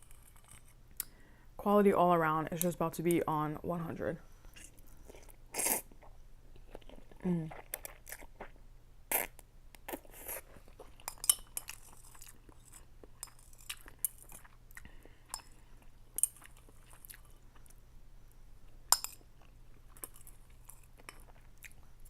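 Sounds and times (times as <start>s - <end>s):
person chewing noodles: 4.5s - 17.8s, 18.6s - 22.0s.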